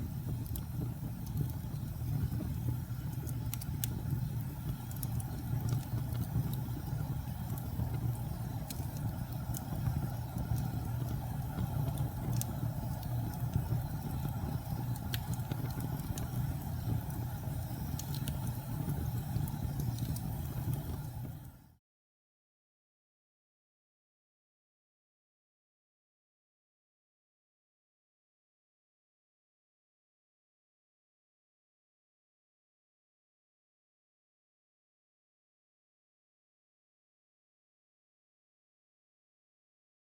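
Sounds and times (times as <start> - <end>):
fire crackles and pops: 0.0 - 21.8
fire low rumble: 0.0 - 21.8.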